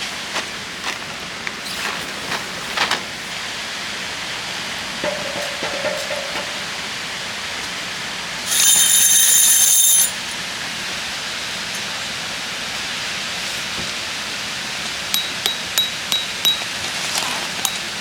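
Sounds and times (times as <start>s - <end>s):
rain hiss: 0.0s - 8.6s, 10.2s - 15.4s
high-pitched ringing: 8.4s - 10.5s.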